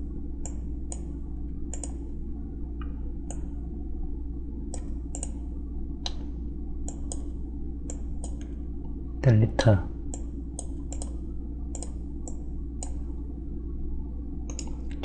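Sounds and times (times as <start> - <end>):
steady low hum: 0.0 - 15.0
computer mouse clicking: 1.7 - 2.0, 4.7 - 5.4, 6.8 - 7.3, 7.9 - 8.6, 10.1 - 13.0, 14.5 - 15.0.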